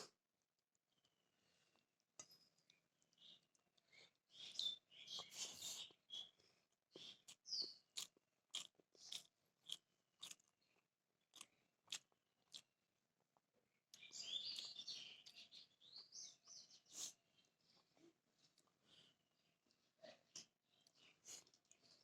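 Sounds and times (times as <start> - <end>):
close-up chewing: 1.0 - 15.5.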